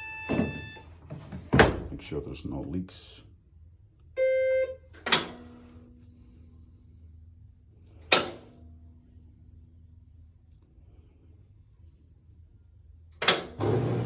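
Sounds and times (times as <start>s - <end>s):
electronic beep: 0.0s - 0.9s
washing machine humming: 0.0s - 2.2s, 13.2s - 14.0s
washing machine click: 13.2s - 13.9s.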